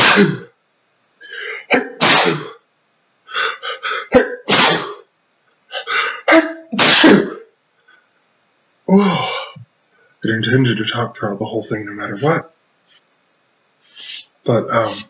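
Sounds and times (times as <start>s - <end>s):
man sneezing loudly: 0.0s - 0.5s, 1.4s - 2.6s, 3.3s - 5.0s, 5.7s - 7.4s.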